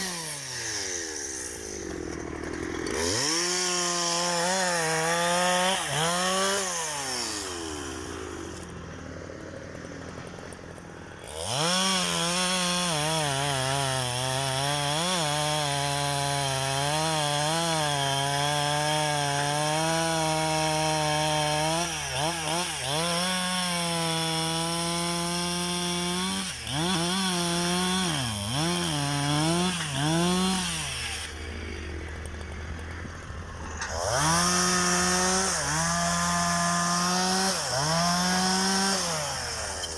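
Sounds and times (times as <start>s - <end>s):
excavator diesel engine under load: 8.2s - 11.5s.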